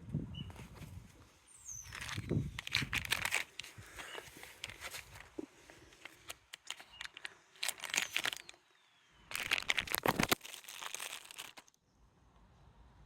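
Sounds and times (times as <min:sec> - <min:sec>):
plastic bag crinkling: 0:01.8 - 0:08.6, 0:09.3 - 0:11.8.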